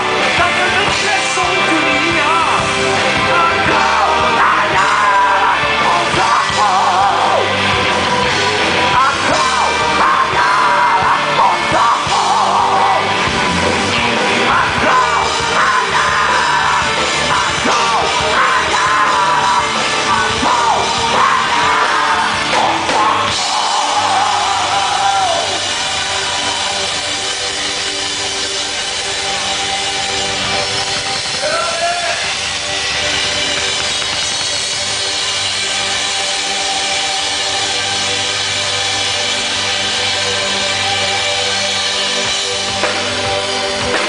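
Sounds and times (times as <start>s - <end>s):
singer singing and yelling: 0.0s - 27.8s, 30.4s - 32.7s
rock band playing live: 0.0s - 44.0s.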